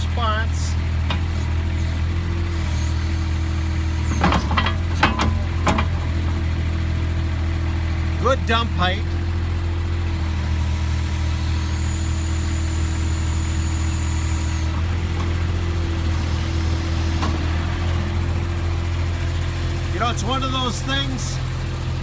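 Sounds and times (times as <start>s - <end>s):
loader engine idling: 0.0s - 22.0s
faint hydraulic whine: 1.1s - 6.4s, 10.1s - 15.4s, 16.0s - 17.6s.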